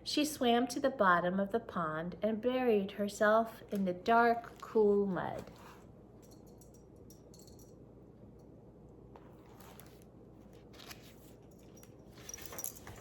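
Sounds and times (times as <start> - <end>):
low room hum: 0.0 - 13.0
paper pages rustling: 4.3 - 5.9, 9.2 - 13.0.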